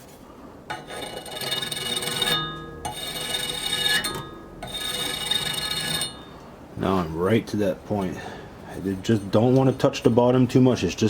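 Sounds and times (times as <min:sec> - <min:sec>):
sharpening strokes on steel blade: 0:00.7 - 0:06.2.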